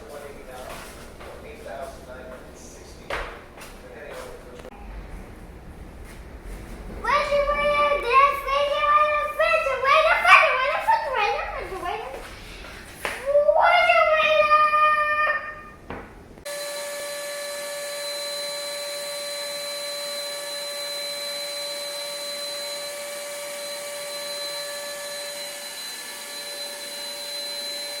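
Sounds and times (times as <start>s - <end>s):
small electric motor whining: 16.5s - 28.0s.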